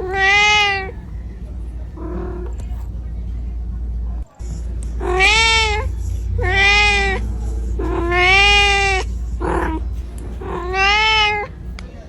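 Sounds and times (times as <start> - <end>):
kitten meowing: 0.0 - 1.0, 5.0 - 9.8, 10.4 - 11.5.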